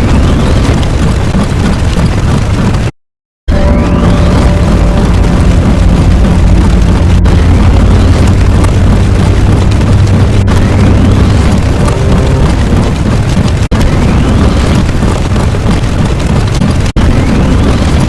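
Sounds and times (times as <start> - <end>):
deep rumbling explosion: 3.7 - 15.7.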